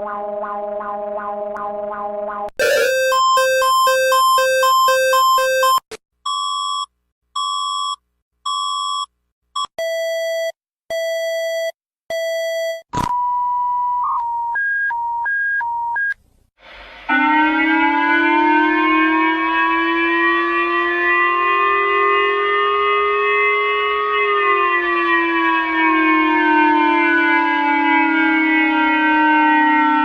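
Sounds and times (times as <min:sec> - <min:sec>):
air-raid siren rising: 0:02.6 - 0:05.8, 0:17.0 - 0:30.0
two-note alternating alert tone: 0:02.6 - 0:05.8
emergency alert beeps: 0:02.6 - 0:07.9.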